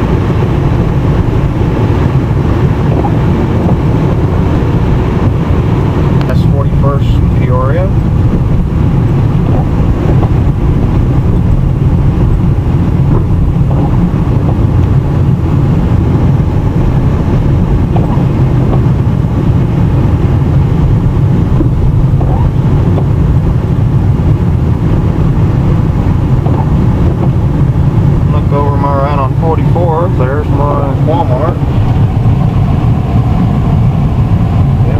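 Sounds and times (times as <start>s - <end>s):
car engine and tyre rumble: 0.0s - 34.9s.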